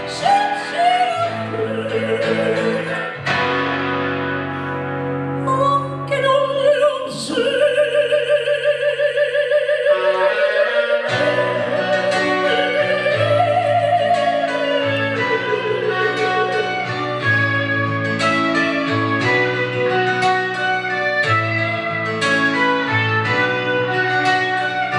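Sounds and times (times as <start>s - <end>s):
operatic singing voice: 0.0s - 3.2s, 5.4s - 17.2s
piano and guitar accompaniment: 0.0s - 24.9s.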